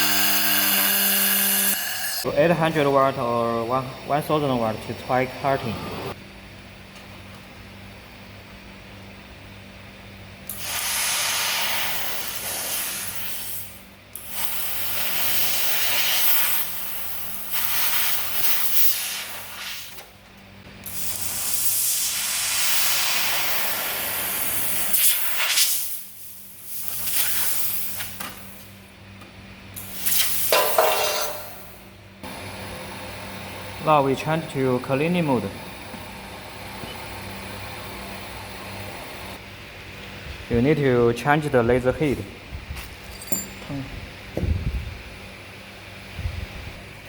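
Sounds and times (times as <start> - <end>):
laser cutter gas hissing: 0.0 - 6.2, 10.5 - 19.9, 20.8 - 28.7, 29.8 - 31.7
low electrical hum: 0.0 - 10.7, 25.8 - 47.0.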